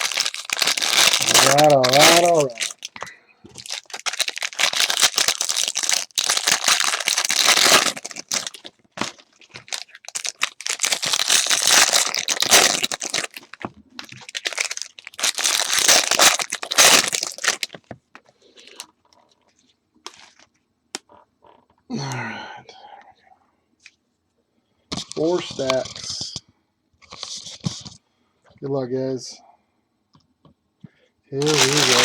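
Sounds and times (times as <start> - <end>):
foil wrappers crinkling and tearing: 0.0 - 17.8, 31.4 - 32.0.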